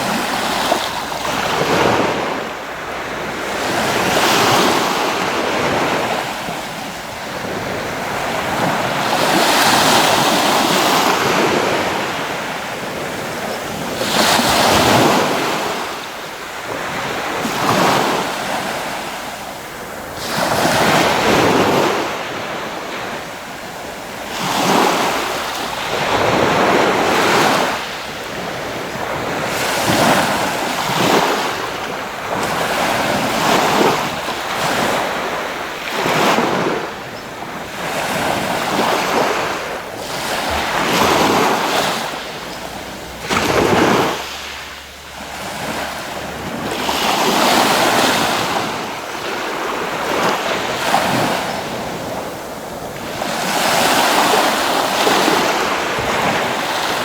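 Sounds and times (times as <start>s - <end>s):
sea waves breaking on shore: 0.0s - 57.0s.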